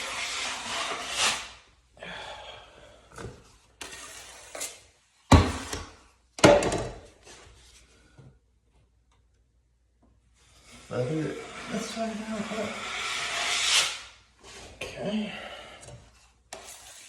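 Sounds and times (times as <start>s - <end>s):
taping knife scraping compound: 0.0s - 1.7s, 3.8s - 4.9s, 10.6s - 14.2s, 16.5s - 17.0s.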